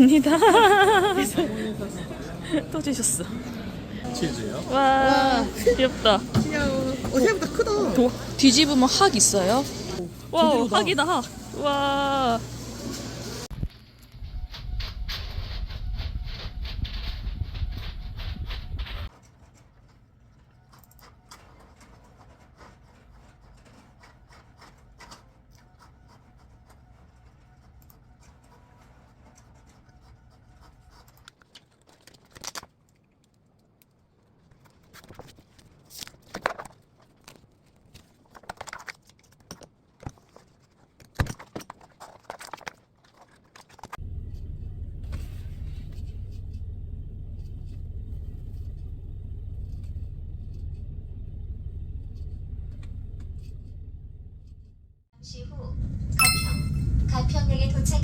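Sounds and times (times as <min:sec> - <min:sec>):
train running low rumble: 0:03.5 - 0:13.5, 0:14.1 - 0:19.1, 0:44.0 - 0:58.0
small objects clicking and scraping: 0:19.0 - 0:49.0.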